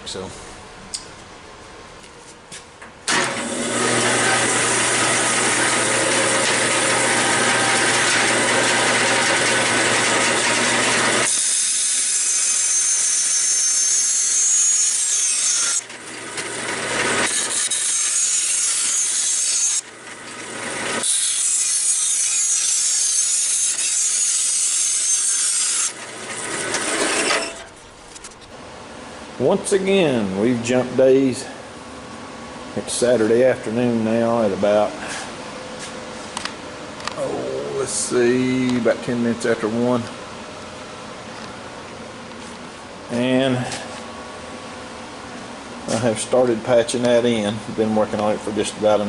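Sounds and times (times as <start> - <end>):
power tool cutting sheet steel: 3.1 - 27.7.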